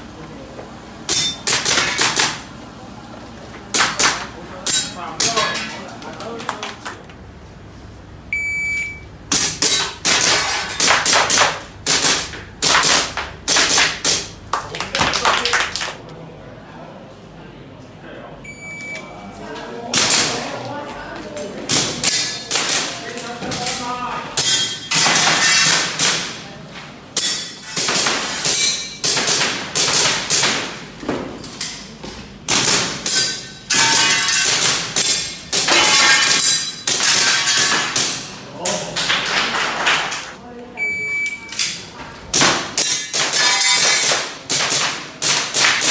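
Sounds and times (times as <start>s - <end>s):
shot timer beep: 8.3s - 9.1s, 18.5s - 19.1s, 40.8s - 41.5s.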